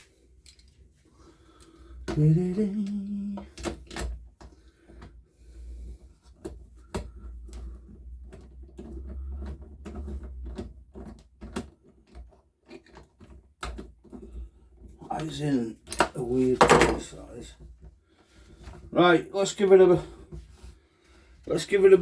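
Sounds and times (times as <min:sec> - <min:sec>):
person humming: 0:02.1 - 0:03.6
tools clicking and knocking on workbench: 0:15.8 - 0:17.8.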